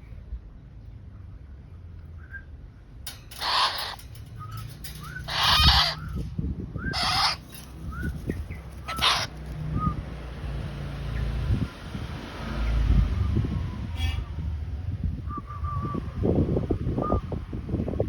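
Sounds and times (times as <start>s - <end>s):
harsh raspy bird calls: 3.1s - 6.3s, 6.9s - 9.3s.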